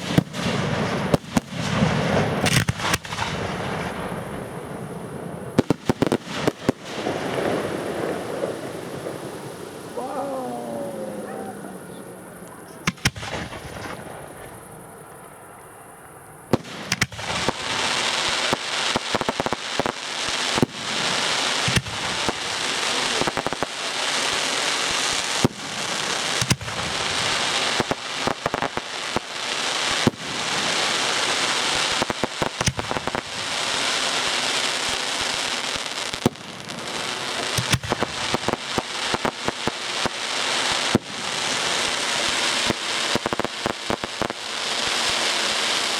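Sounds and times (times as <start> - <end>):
sharp firework shots: 0.0 - 11.9, 12.8 - 15.2, 16.5 - 45.9
fireworks crackling: 0.0 - 45.9
firework bang: 12.8 - 14.8.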